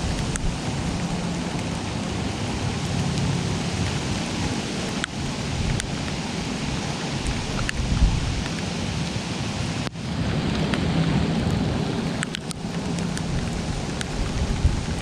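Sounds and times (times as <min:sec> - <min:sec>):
low rumble: 0:00.0 - 0:04.0
steady rainfall: 0:00.0 - 0:15.0.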